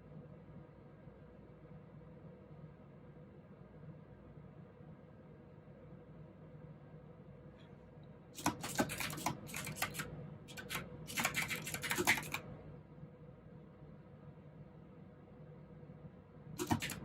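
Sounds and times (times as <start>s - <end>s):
clicky mechanical keyboard typing: 8.4s - 12.5s, 16.6s - 17.0s.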